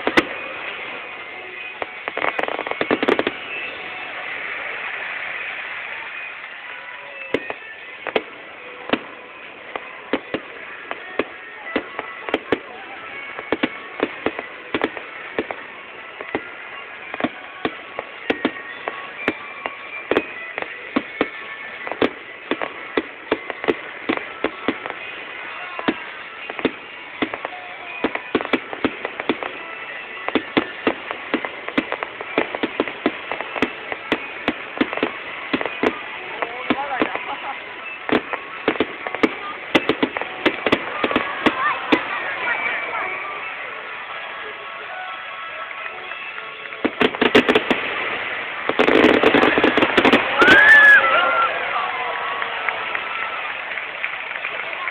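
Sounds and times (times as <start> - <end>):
fireworks bangs and pops: 0.0 - 54.9
steady hiss: 46.6 - 51.8.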